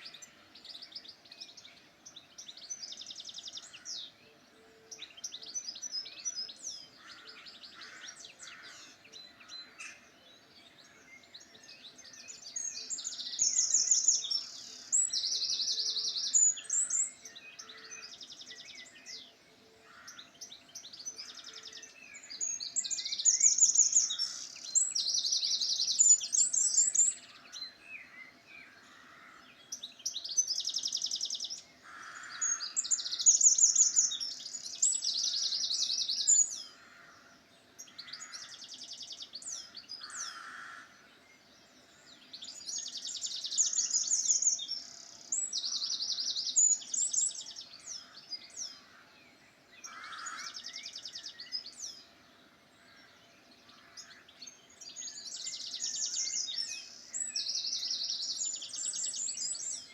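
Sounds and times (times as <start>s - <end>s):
birds chirping and warbling: 0.0s - 59.9s
bird song of buzzy trills: 20.0s - 59.9s.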